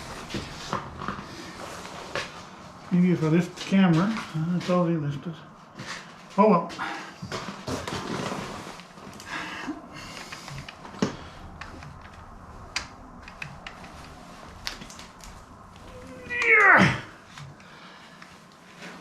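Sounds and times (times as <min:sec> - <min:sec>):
cat meowing: 0:15.9 - 0:17.1.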